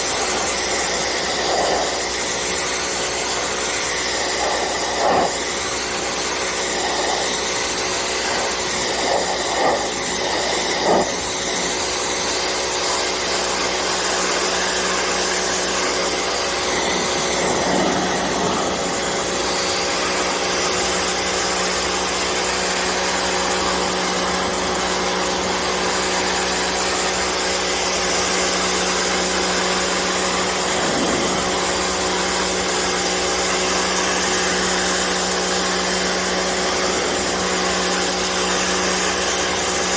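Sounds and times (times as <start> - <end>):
pressure washer spray hissing: 0.0 - 21.7, 29.1 - 35.2
motor and pump hum: 0.0 - 39.9.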